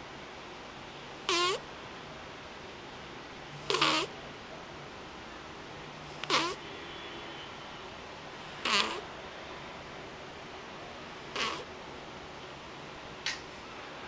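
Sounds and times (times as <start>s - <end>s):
cat snoring: 1.2s - 1.6s, 3.6s - 4.2s, 6.2s - 6.6s, 8.6s - 9.1s, 11.3s - 11.7s.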